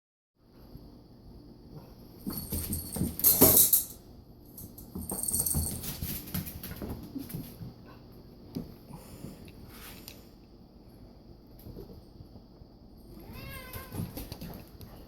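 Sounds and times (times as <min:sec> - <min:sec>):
paws scrabbling and bumping: 0:02.2 - 0:03.6, 0:04.6 - 0:07.9, 0:13.6 - 0:15.0.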